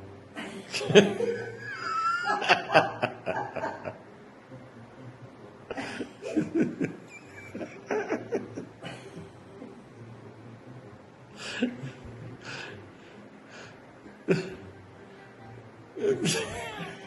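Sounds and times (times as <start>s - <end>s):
person laughing: 0.6s - 4.0s, 5.7s - 9.7s, 14.3s - 14.6s, 16.0s - 17.0s.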